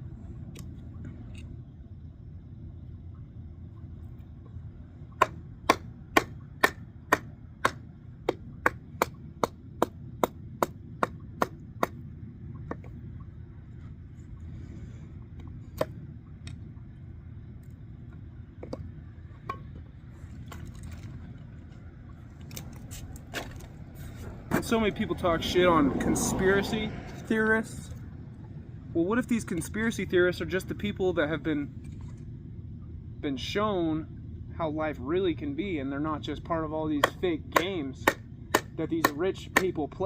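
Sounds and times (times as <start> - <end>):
steady low rumble: 0.0 - 40.0
axe chopping kindling: 5.2 - 12.0, 37.0 - 39.8.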